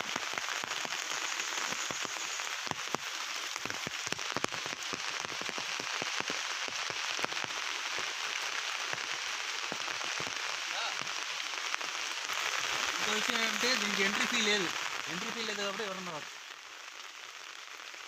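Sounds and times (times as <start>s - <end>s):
falling water hissing: 0.0s - 16.5s.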